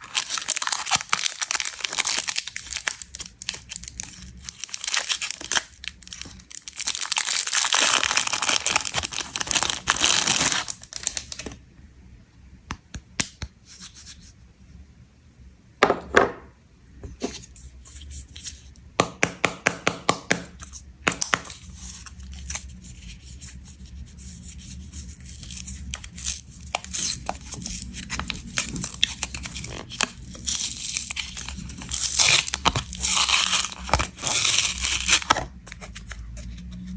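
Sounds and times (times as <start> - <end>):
wrapper snapping and ripping: 0.0 - 11.6, 24.6 - 36.9
wrappers crinkling: 0.0 - 11.6, 24.2 - 36.9.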